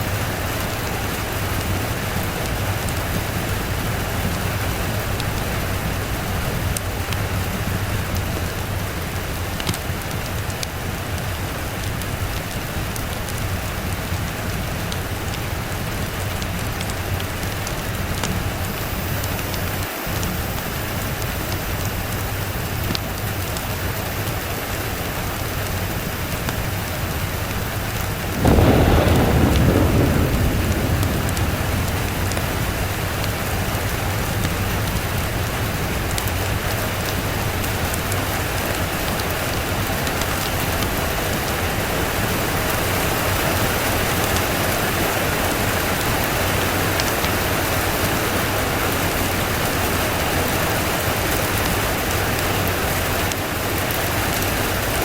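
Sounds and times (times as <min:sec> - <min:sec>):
steady rain: 0:00.0 - 0:55.0
thunder rumbling: 0:27.0 - 0:53.1.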